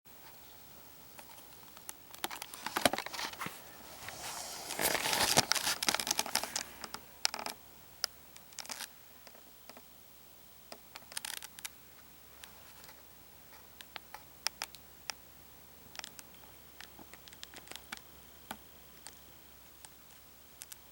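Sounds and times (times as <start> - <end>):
rustling and crinkling: 0.2 - 7.6.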